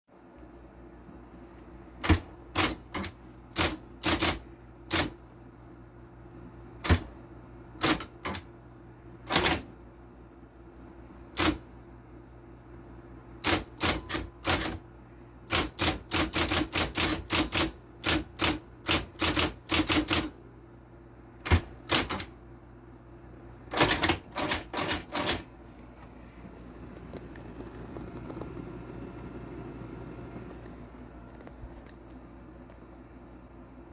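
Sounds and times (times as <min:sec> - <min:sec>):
steady low hum: 0:00.1 - 0:33.9
typewriter keystrokes: 0:02.0 - 0:05.2, 0:06.8 - 0:07.1, 0:07.8 - 0:08.5, 0:09.2 - 0:09.7, 0:11.3 - 0:11.6, 0:13.4 - 0:14.8, 0:15.5 - 0:20.4, 0:21.4 - 0:22.4, 0:23.7 - 0:25.5.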